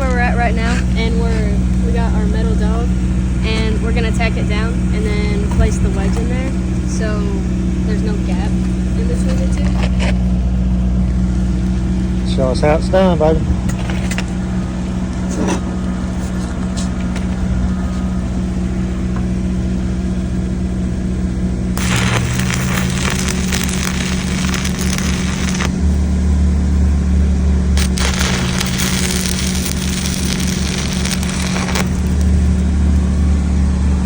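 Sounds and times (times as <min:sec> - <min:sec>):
welding arc crackling: 0:21.8 - 0:26.0, 0:27.8 - 0:32.8.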